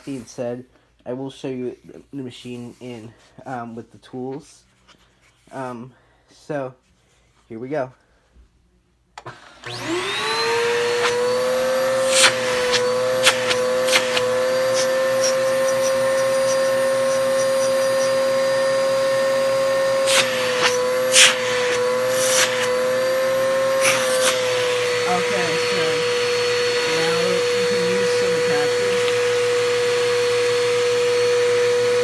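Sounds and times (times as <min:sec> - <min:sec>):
vacuum cleaner motor whine: 0:09.2 - 0:32.0.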